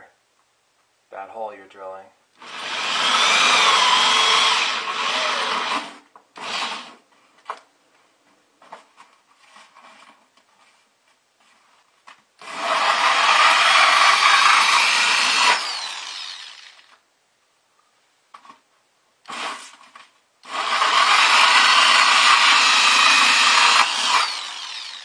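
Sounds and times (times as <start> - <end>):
power drill cutting plastic: 2.4 - 7.0, 12.4 - 17.0, 19.3 - 19.8, 20.4 - 25.0.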